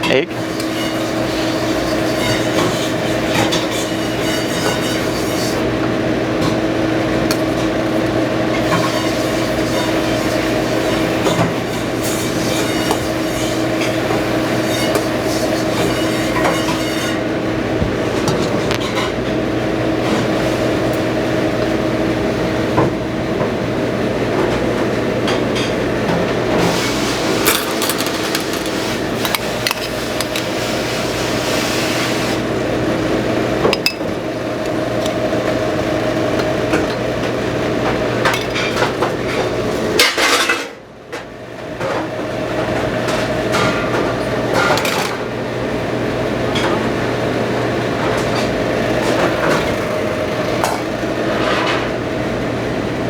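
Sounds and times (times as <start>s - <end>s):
steady machine hum: 0.0s - 53.0s
metal utensils clinking: 27.3s - 30.6s.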